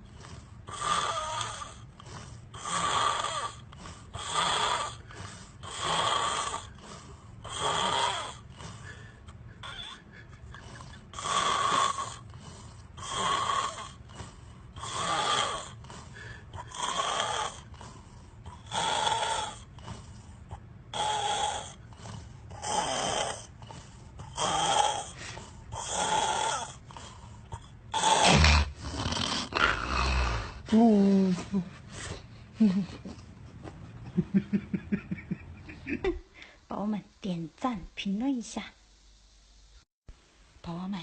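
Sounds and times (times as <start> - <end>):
person snoring loudly: 0.0 - 9.0, 9.6 - 20.2, 20.9 - 31.3.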